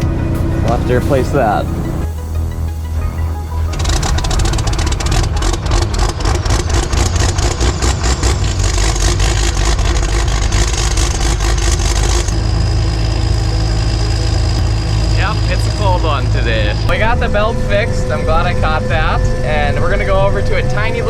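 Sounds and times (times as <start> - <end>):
low hum with high whine: 0.0 - 21.0
farm machine engine clattering: 3.7 - 17.2.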